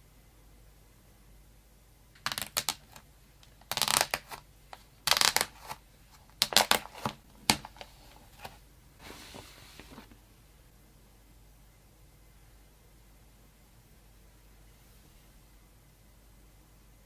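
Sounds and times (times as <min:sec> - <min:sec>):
packaging rustling and scraping: 0:06.4 - 0:10.2.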